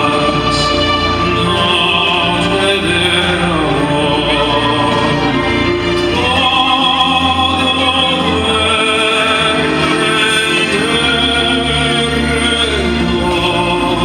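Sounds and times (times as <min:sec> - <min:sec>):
orchestral accompaniment: 0:00.0 - 0:14.0
person singing long wavering notes: 0:00.0 - 0:14.0.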